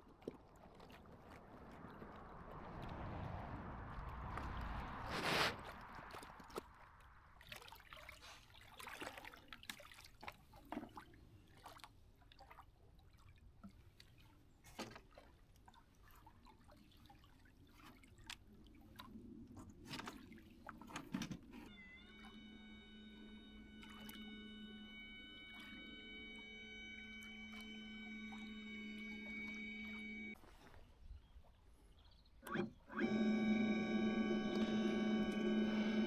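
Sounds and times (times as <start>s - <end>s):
electric boat motor whining: 21.7s - 30.4s, 32.4s - 36.0s.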